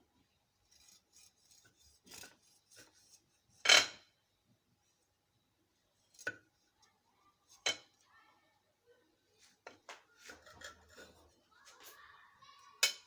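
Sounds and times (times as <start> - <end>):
knife scraping plate: 0.7 - 4.0, 10.2 - 11.4
knife cutting cake: 10.2 - 11.4.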